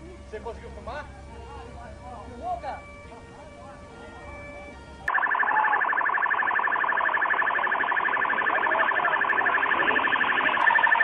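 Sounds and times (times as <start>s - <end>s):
faint voices: 0.0s - 5.1s
car alarm warbling: 0.2s - 11.0s.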